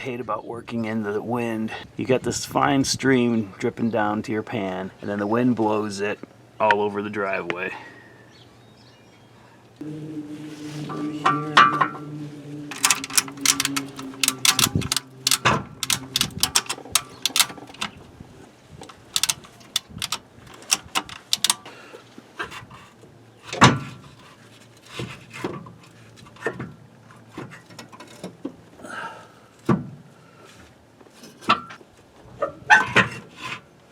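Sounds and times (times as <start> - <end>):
metal tools clinking and knocking: 12.7 - 18.0, 18.8 - 21.7
sharp metallic clicks: 12.7 - 18.0, 18.8 - 21.7.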